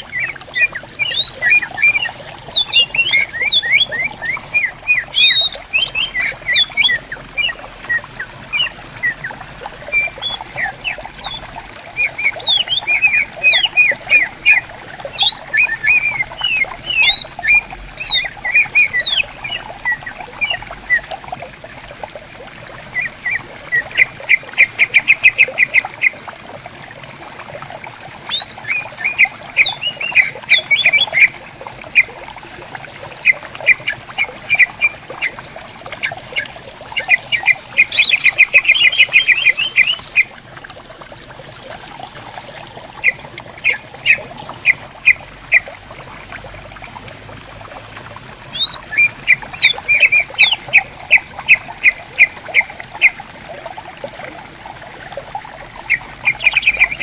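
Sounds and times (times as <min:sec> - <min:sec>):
birds whistling calls: 0:00.0 - 0:21.1, 0:28.3 - 0:31.3, 0:36.0 - 0:40.3, 0:43.0 - 0:45.6, 0:48.5 - 0:53.1, 0:55.9 - 0:57.0
stream babbling: 0:00.0 - 0:57.0.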